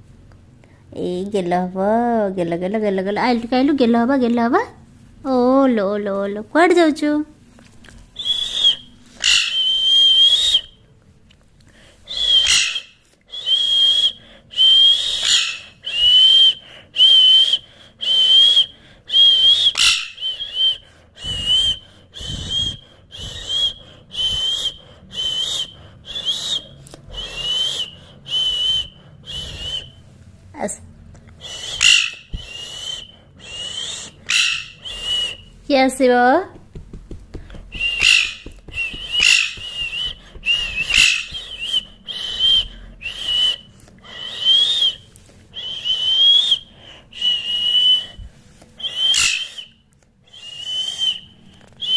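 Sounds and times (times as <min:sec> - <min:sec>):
parrot shrill rasping calls: 0:08.2 - 0:09.9, 0:12.1 - 0:13.0, 0:15.0 - 0:15.8, 0:19.3 - 0:20.4, 0:31.5 - 0:35.4, 0:37.8 - 0:42.5, 0:48.9 - 0:49.8.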